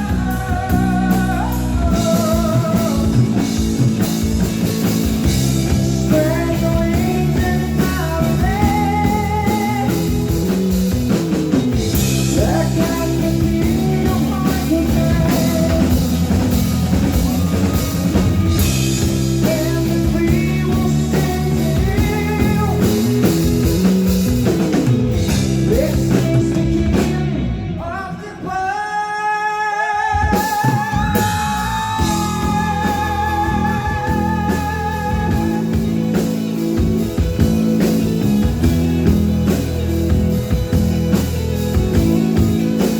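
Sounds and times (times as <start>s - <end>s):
person singing: 0.0s - 4.4s, 5.7s - 10.6s, 12.0s - 23.9s, 25.4s - 36.4s
rock band playing live: 0.0s - 42.9s.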